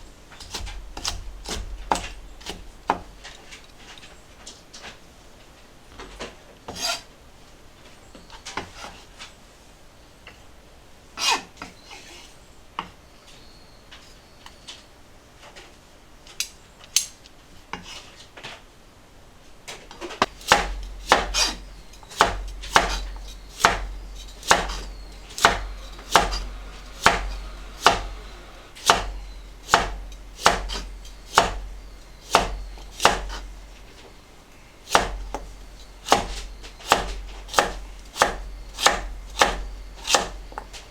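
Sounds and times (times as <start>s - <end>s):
knife chopping on cutting board: 0.4s - 3.2s, 6.7s - 7.0s, 20.2s - 33.6s, 34.9s - 40.8s.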